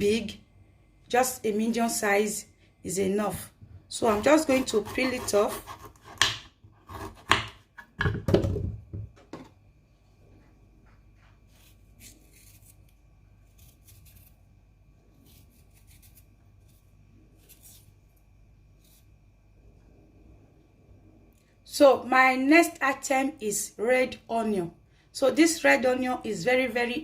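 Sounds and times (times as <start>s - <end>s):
faint steady hum: 0.0s - 27.0s
faint scraping strokes: 11.2s - 12.8s, 18.7s - 19.2s.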